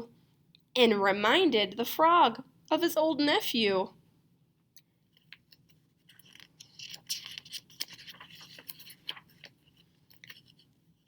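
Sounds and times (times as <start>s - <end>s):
paper page turning: 5.1s - 10.8s.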